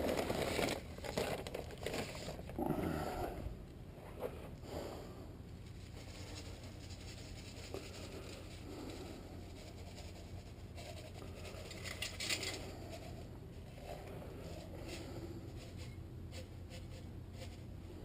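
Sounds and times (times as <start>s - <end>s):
steady low hum: 0.0s - 18.0s
faint scratching and rubbing: 5.5s - 18.0s.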